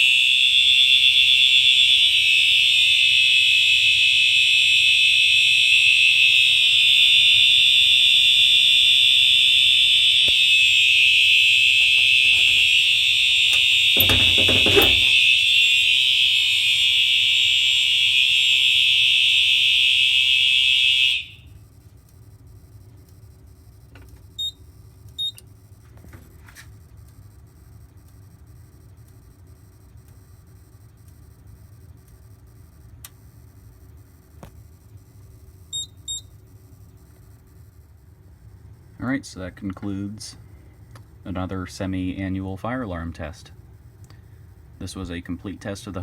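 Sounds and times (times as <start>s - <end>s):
fire alarm high-pitched tone: 0.0s - 21.8s, 22.5s - 25.8s, 34.6s - 39.0s.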